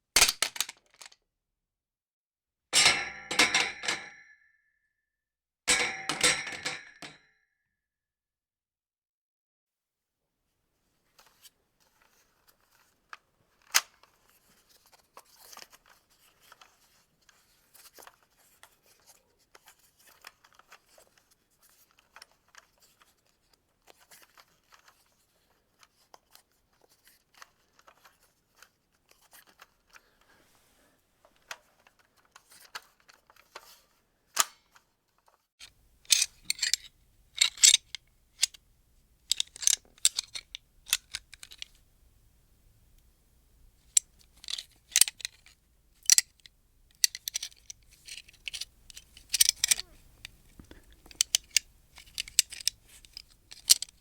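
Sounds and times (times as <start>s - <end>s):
gun parts rattling: 0.2s - 1.2s, 35.6s - 42.2s, 43.0s - 54.0s
plastic toy gun clicks: 0.2s - 1.2s, 36.1s - 38.6s, 39.3s - 41.7s, 44.0s - 50.4s, 51.0s - 54.0s.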